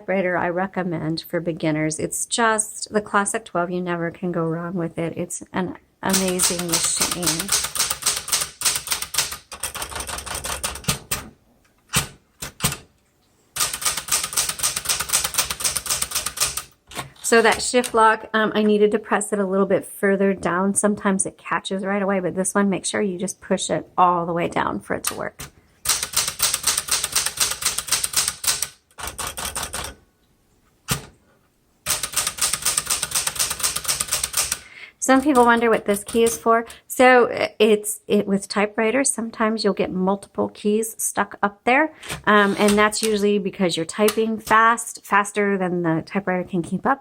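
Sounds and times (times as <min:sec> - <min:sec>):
manual typewriter typing: 0:06.1 - 0:11.3, 0:11.9 - 0:12.9, 0:13.6 - 0:18.1, 0:25.1 - 0:30.0, 0:31.8 - 0:36.5, 0:42.1 - 0:43.3.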